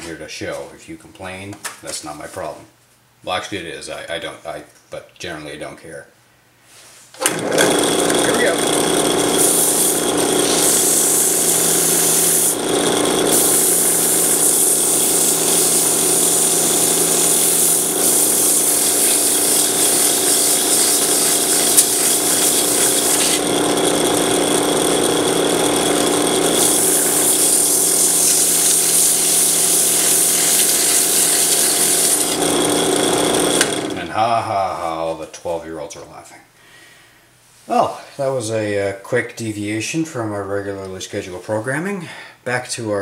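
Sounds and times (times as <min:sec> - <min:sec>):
drill press motor hum: 0:07.2 - 0:34.1
rasping hiss of spinning tool: 0:09.4 - 0:23.5, 0:26.5 - 0:32.4.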